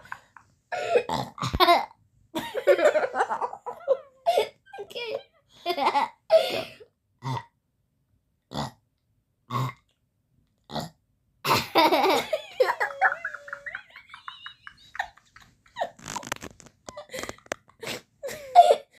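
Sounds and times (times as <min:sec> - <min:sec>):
laughter and giggling: 0:00.0 - 0:01.8, 0:02.4 - 0:06.2, 0:11.5 - 0:16.2, 0:16.9 - 0:18.9
person burping: 0:00.8 - 0:01.8, 0:09.5 - 0:09.9.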